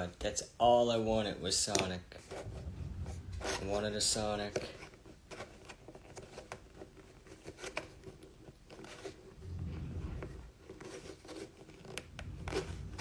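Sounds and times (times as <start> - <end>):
low rumble: 2.2 - 4.8, 9.4 - 10.6, 12.0 - 13.0.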